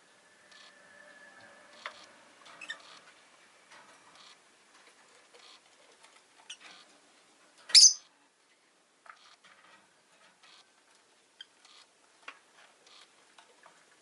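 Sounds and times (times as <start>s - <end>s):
high-pitched bird chirp: 7.7s - 8.0s
lovebird squeaks and clicks: 7.7s - 8.0s.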